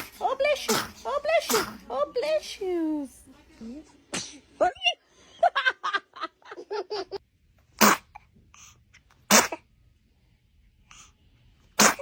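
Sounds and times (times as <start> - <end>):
baby sneezing: 0.0 - 1.9, 4.1 - 4.5, 7.8 - 8.2, 9.3 - 9.6, 11.7 - 12.0.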